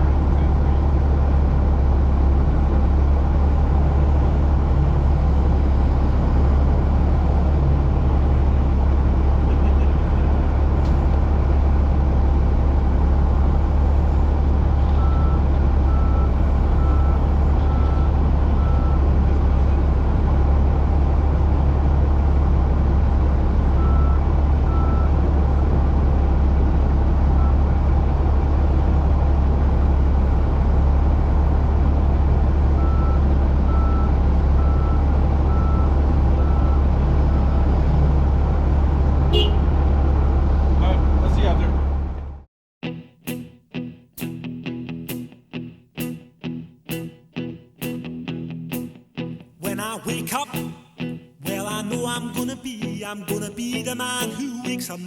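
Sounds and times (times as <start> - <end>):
diesel construction equipment droning: 0.0 - 42.5.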